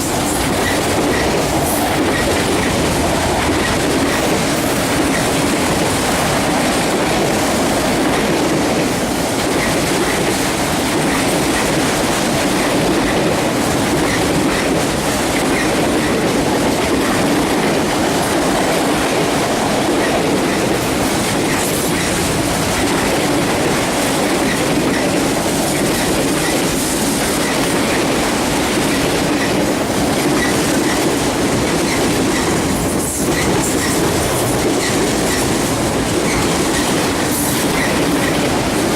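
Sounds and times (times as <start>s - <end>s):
steel wheels rumbling on rail: 0.0s - 38.9s.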